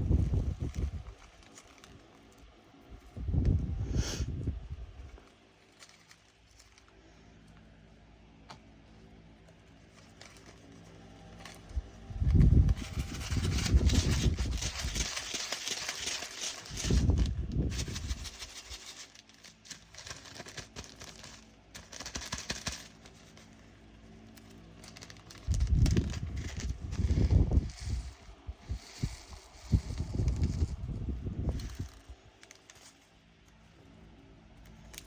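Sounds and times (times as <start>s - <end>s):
small beads rattling into plastic pot: 11.3s - 23.5s, 24.6s - 33.0s.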